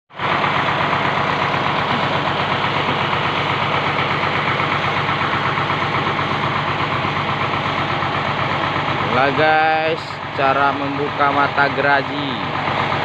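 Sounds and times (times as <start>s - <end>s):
sawmill engine droning: 0.1s - 13.0s.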